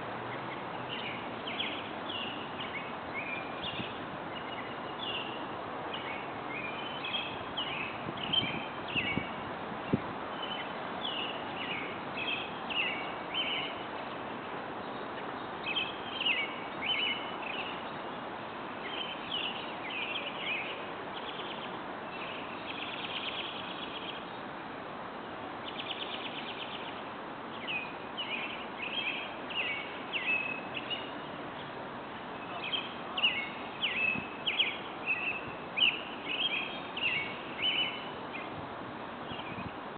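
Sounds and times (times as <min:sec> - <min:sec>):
outdoor background hiss: 0:00.0 - 0:39.9
birds chirping: 0:00.3 - 0:24.6, 0:25.6 - 0:38.6, 0:39.2 - 0:39.8.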